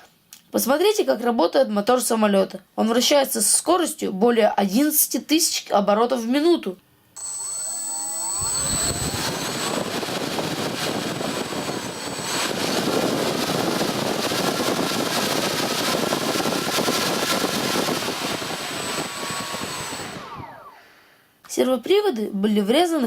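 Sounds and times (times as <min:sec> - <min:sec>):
electric motor propeller whir: 0:07.2 - 0:21.2.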